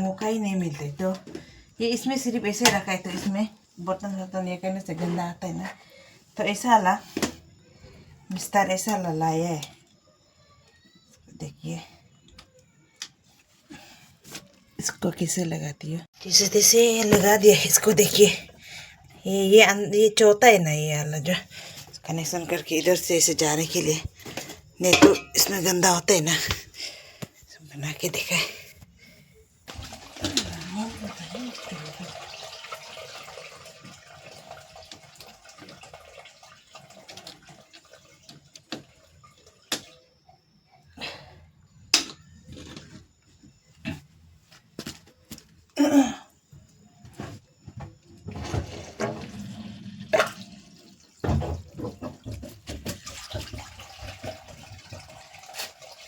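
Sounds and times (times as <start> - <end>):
water running into drain: 29.7 - 40.2, 48.3 - 56.0.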